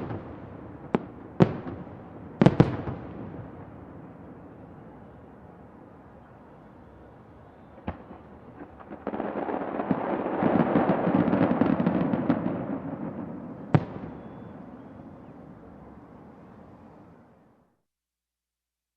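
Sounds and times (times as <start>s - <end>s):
firework crackling barrage: 0.0s - 4.4s, 7.8s - 15.3s
distant firework bangs: 7.6s - 15.3s.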